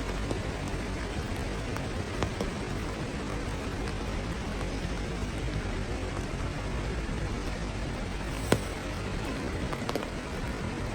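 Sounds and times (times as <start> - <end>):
rushing water: 0.0 - 10.9.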